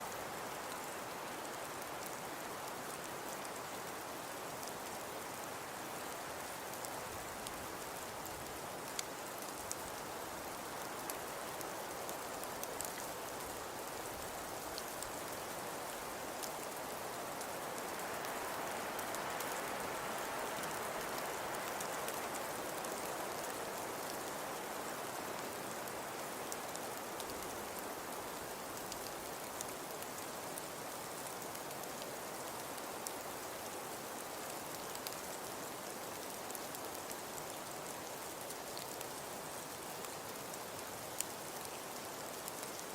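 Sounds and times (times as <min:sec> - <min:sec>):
soft hiss of falling snow: 0:00.0 - 0:42.9
faint ticks: 0:08.2 - 0:09.8, 0:34.8 - 0:42.9.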